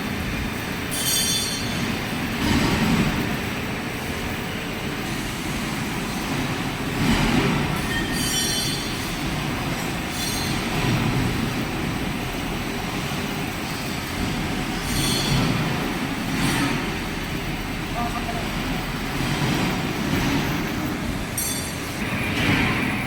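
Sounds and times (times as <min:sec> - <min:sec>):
metal lathe rumbling: 0:00.0 - 0:23.0
high metallic squeals: 0:00.9 - 0:01.9, 0:07.8 - 0:09.3, 0:10.1 - 0:10.8.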